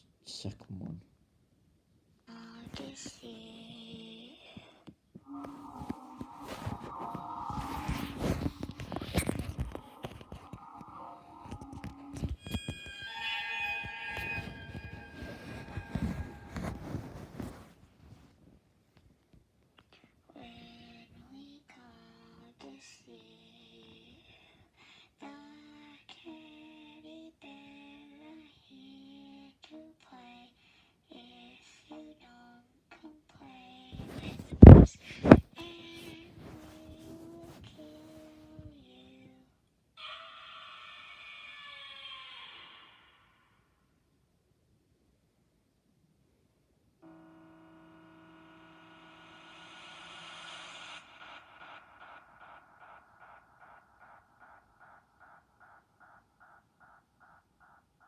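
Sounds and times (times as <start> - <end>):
high voice singing slow notes: 5.2 - 12.6
eerie buzzing tone: 5.2 - 16.8.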